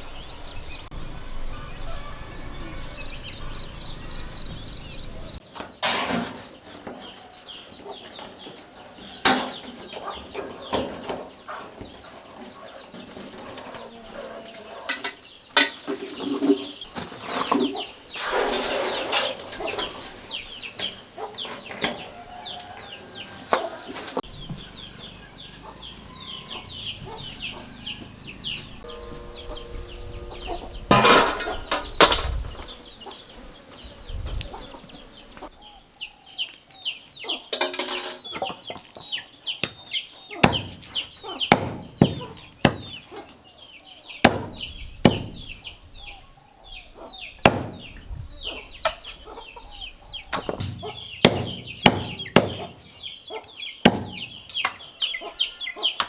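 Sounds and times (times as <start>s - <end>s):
chicks peeping: 0.0s - 5.7s, 6.4s - 37.5s, 38.2s - 56.0s
chickens clucking: 0.0s - 56.0s.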